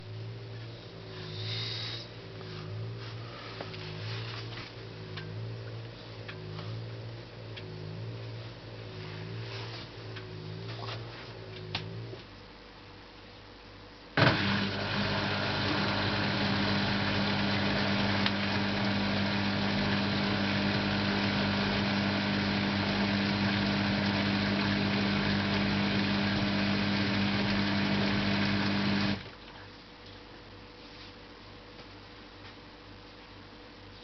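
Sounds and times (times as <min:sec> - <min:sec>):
washing machine running: 0:14.2 - 0:29.4.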